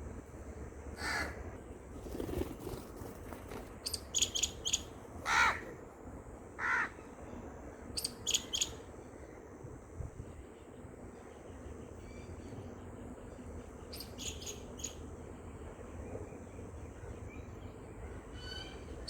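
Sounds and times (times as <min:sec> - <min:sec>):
crow cawing: 0:01.0 - 0:01.4, 0:05.2 - 0:05.7, 0:06.6 - 0:07.0.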